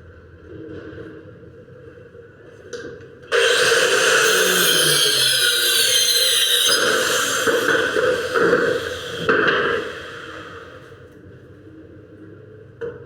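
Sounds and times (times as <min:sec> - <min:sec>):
power tool running on wood: 0:03.3 - 0:10.9.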